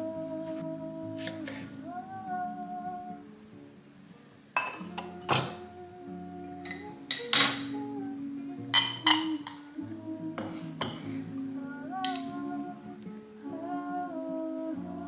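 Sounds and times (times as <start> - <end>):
soft instrumental guitar music: 0.0 - 15.0
kitchenware clinking: 4.6 - 5.7, 6.6 - 8.0, 8.7 - 9.7, 10.4 - 11.2, 12.0 - 12.5.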